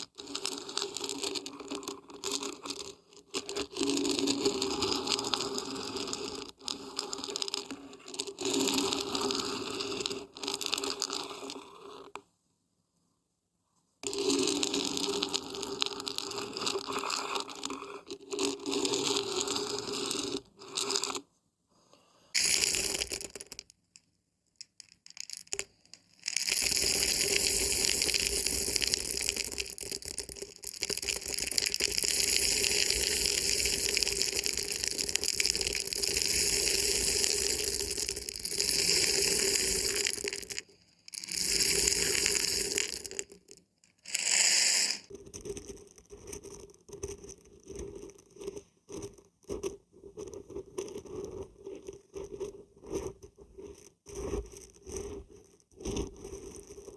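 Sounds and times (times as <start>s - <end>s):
dried beans rattling when shaken: 0.2s - 9.4s, 22.4s - 23.7s, 24.6s - 53.0s.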